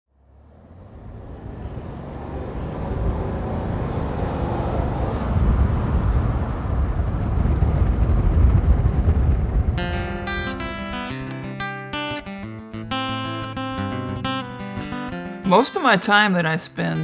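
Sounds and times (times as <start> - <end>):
vehicle road noise rumble: 0.1 - 10.9.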